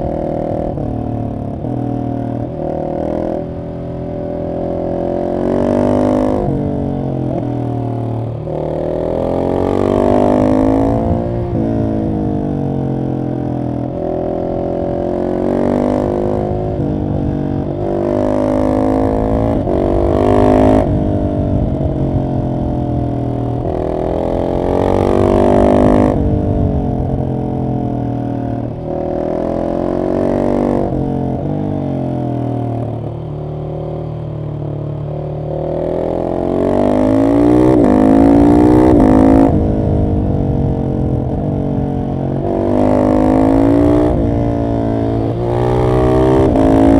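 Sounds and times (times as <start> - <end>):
motorcycle engine accelerating: 0.0 - 46.9.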